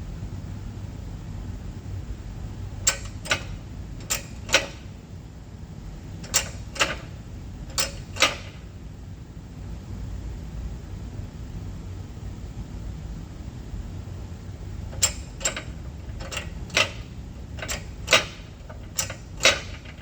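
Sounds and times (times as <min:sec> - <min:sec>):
steady low hum: 0:00.0 - 0:20.0
hand pump clicks: 0:02.8 - 0:04.9, 0:06.2 - 0:07.1, 0:07.7 - 0:08.6, 0:14.9 - 0:20.0.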